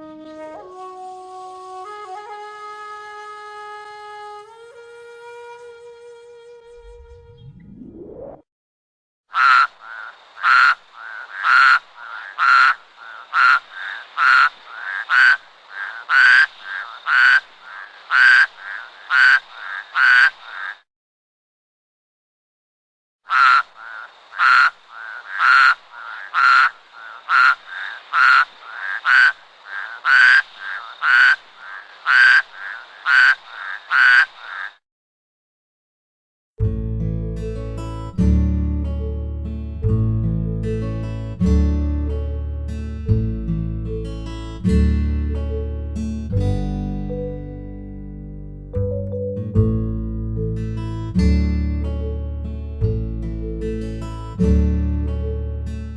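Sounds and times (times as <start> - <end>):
toad quacking calls: 9.3 - 20.8, 23.3 - 34.8.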